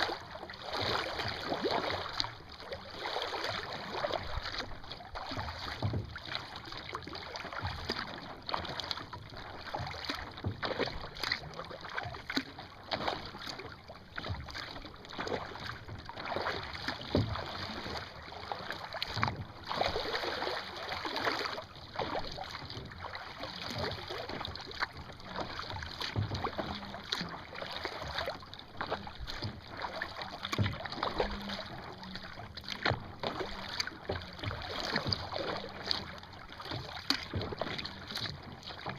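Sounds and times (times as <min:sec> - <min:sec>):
water splashing against hull: 0:00.0 - 0:38.9.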